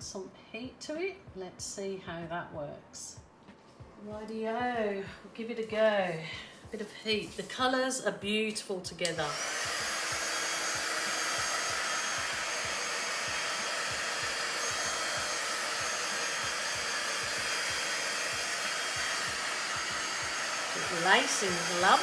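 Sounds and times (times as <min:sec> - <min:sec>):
hairdryer running: 0:09.0 - 0:22.0.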